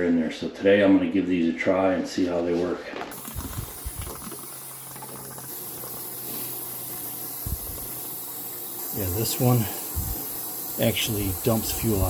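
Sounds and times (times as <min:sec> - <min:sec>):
steady hiss: 0:03.1 - 0:12.0.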